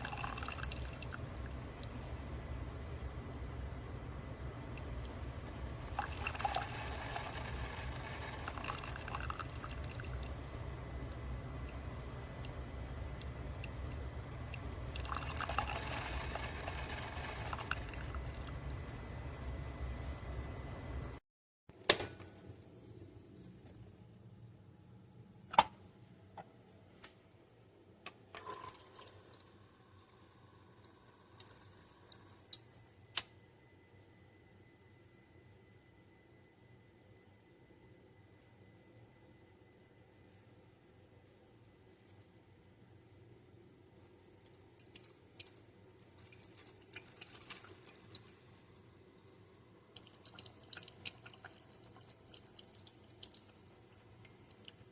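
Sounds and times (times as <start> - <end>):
coffee trickling into a mug: 0.0 - 2.0, 4.7 - 19.0, 28.4 - 30.2, 43.2 - 48.6, 49.9 - 54.9
coffee maker humming: 0.0 - 21.2.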